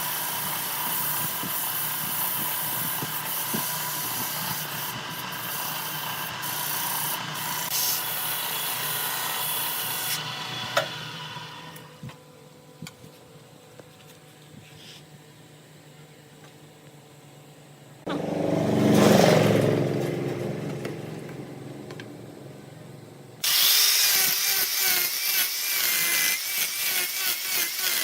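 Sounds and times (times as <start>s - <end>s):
sandpaper hissing on wood: 0.0s - 8.1s, 23.4s - 28.0s.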